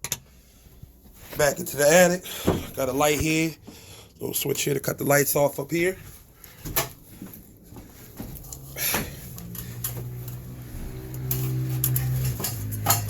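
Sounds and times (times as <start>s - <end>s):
footsteps on wooden floor: 2.4s - 3.8s, 6.0s - 9.2s, 10.0s - 11.1s.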